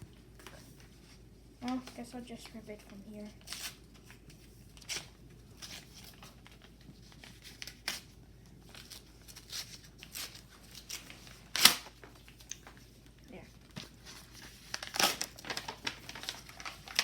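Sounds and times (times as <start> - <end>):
paper crinkling: 0.1 - 17.0
paper envelope tearing: 2.8 - 4.2, 4.8 - 12.7, 14.0 - 17.0.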